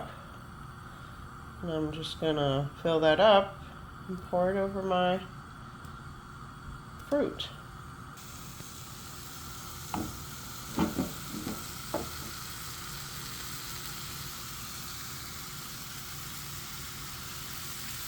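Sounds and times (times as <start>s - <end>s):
batter sizzling in skillet: 8.1s - 18.0s
light knocks: 9.9s - 12.4s.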